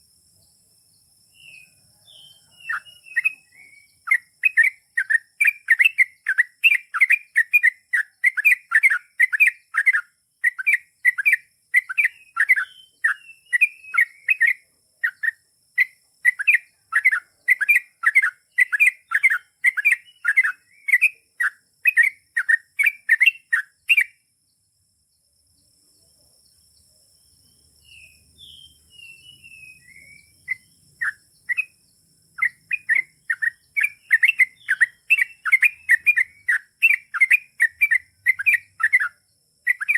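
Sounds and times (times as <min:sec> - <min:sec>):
bird chattering song: 0:01.0 - 0:24.3, 0:26.0 - 0:39.9
higher bird calls: 0:32.4 - 0:39.9.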